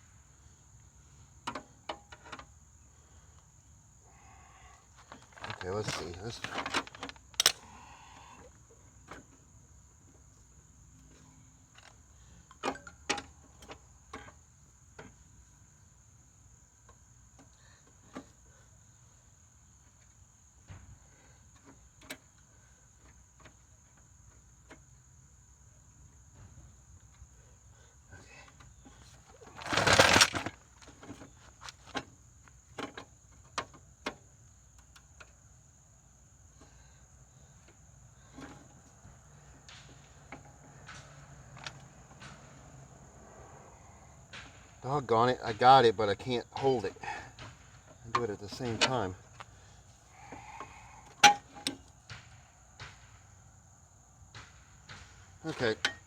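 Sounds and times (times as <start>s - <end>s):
crickets trilling: 0.0s - 56.0s
metal parts clicking and knocking: 5.2s - 7.6s, 29.5s - 30.6s.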